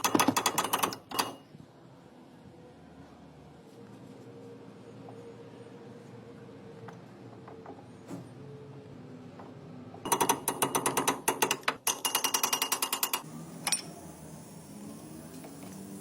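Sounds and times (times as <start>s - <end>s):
rapid metallic clicks: 0.0s - 1.4s, 10.1s - 13.2s.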